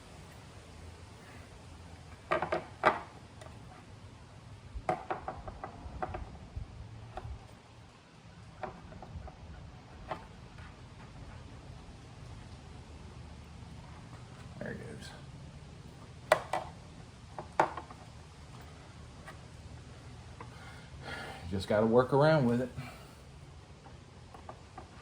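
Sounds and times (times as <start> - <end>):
clicks and knocks of hard parts: 2.1 - 3.6, 4.8 - 6.4, 16.2 - 19.4.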